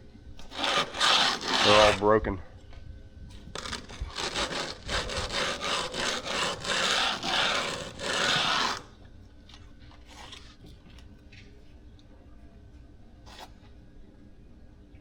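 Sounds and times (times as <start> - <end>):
hand jointer rasping through concrete: 0.4 - 2.0, 3.6 - 8.9.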